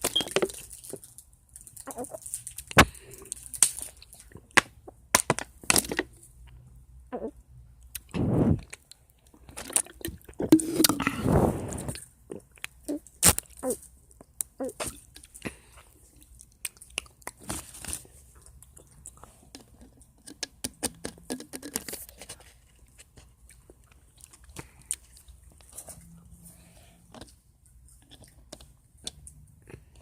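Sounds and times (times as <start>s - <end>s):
loud muffled noise: 11.0s - 12.0s
crunchy food chewing: 11.9s - 30.0s.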